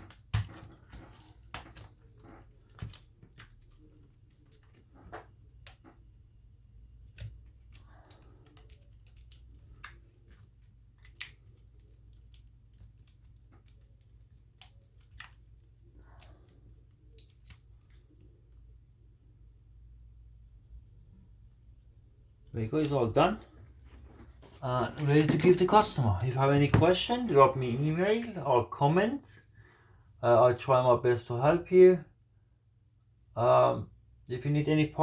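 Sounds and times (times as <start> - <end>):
clicks and taps of small objects: 0.0 - 6.0.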